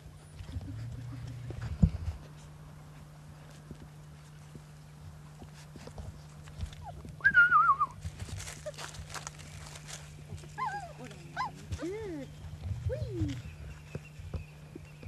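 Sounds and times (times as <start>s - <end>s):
rustling and scuffling: 0.1s - 15.0s
puppy whining: 6.7s - 8.9s, 10.3s - 13.5s.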